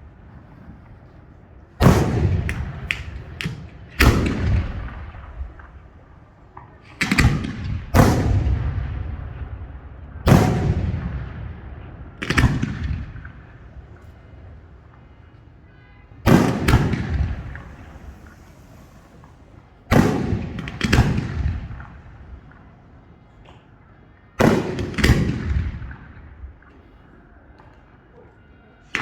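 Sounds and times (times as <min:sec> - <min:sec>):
firework bangs with rumbling tail: 0:01.8 - 0:06.0, 0:07.0 - 0:14.0, 0:16.2 - 0:19.1, 0:19.9 - 0:22.6.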